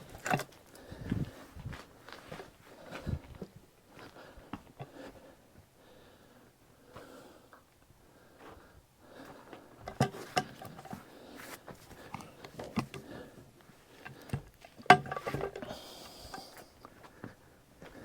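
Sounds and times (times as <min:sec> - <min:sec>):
log knocking and clunking: 0:00.0 - 0:01.3, 0:09.5 - 0:13.3, 0:13.9 - 0:16.6.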